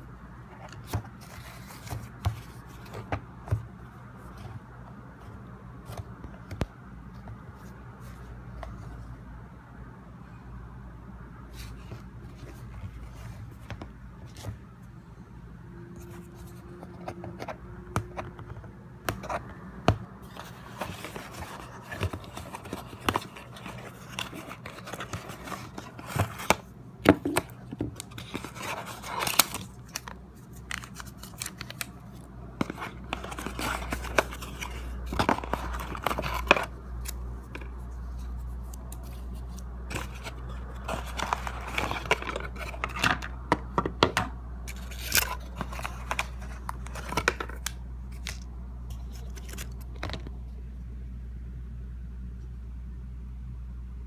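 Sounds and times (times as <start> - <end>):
cardboard and plastic crinkling: 20.2 - 50.4.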